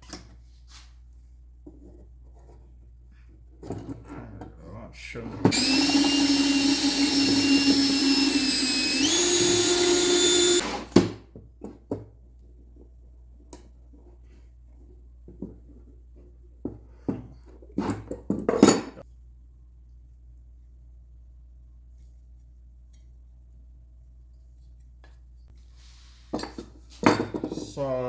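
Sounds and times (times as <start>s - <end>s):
electric drill whining: 5.5s - 11.1s.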